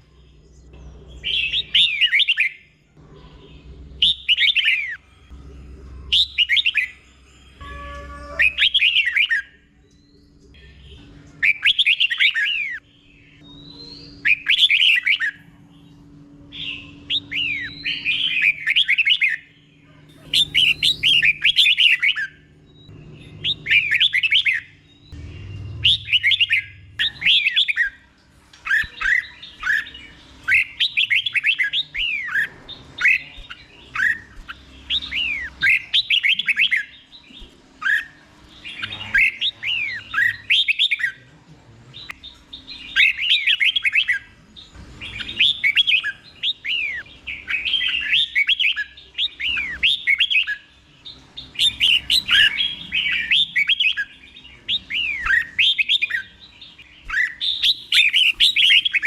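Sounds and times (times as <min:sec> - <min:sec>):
bird singing whistled phrases: 0:11.4 - 0:15.4, 0:20.3 - 0:28.0, 0:51.6 - 0:59.0.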